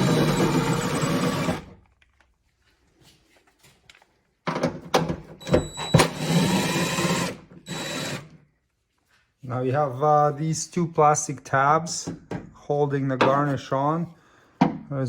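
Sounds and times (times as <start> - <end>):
impact driver whining and rattling: 0.0 - 1.9, 4.9 - 8.4.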